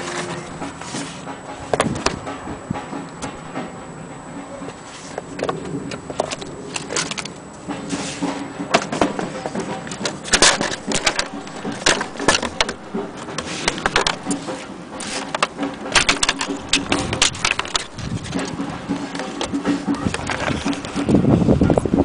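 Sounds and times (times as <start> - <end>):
manual typewriter clicking: 8.7 - 21.2.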